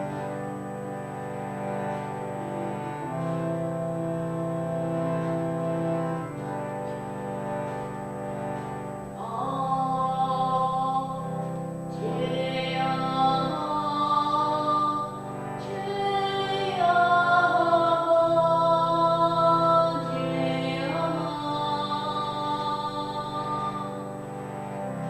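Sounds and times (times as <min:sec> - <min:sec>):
steady low drone: 0:00.0 - 0:25.0
person chanting wordlessly: 0:09.2 - 0:24.2.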